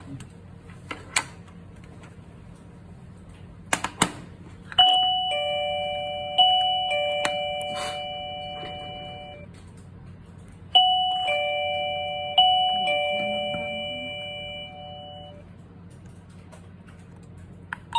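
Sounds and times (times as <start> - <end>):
doorbell ding-dong chime: 4.8 - 9.5, 10.8 - 15.4.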